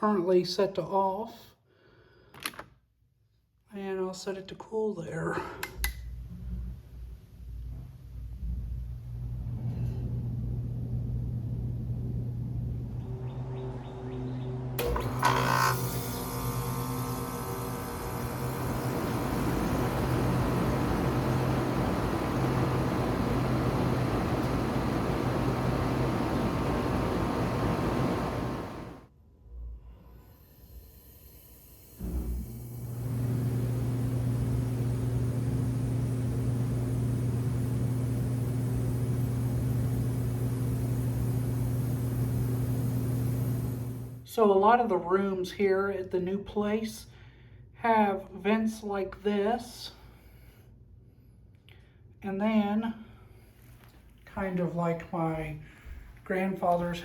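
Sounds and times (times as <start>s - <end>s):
air conditioner hum: 3.7s - 29.1s, 32.4s - 57.0s
rushing air from blower: 14.8s - 29.0s, 31.6s - 44.2s.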